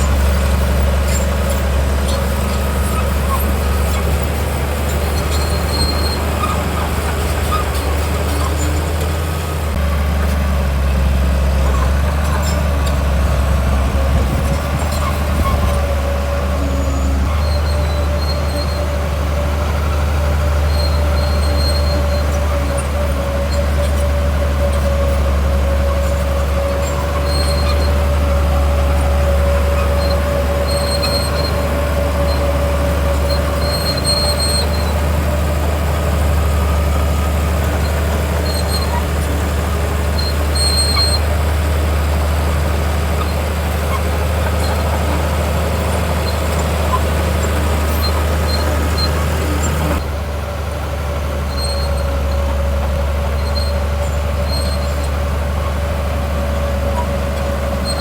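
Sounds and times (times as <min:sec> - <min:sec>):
short high squeaks: 0:00.0 - 0:08.9, 0:14.3 - 0:18.9, 0:26.0 - 0:35.1, 0:40.2 - 0:41.3, 0:43.1 - 0:50.0, 0:57.8 - 0:58.0
bulldozer diesel engine droning: 0:00.0 - 0:58.0.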